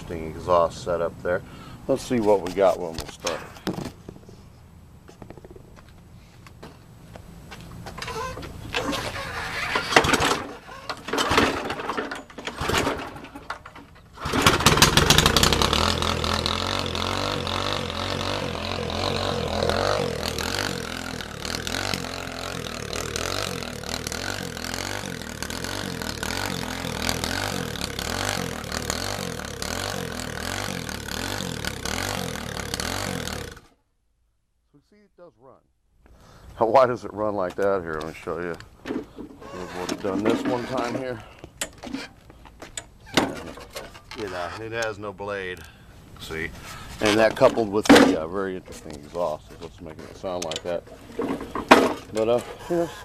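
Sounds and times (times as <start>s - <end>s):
starter cord pulls: 7.9s - 33.7s, 49.7s - 53.0s
small engine running: 14.2s - 33.7s.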